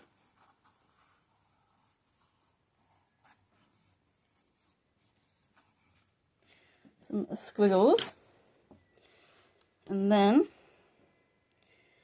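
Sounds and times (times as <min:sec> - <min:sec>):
pen scratching on paper: 0:00.0 - 0:06.1.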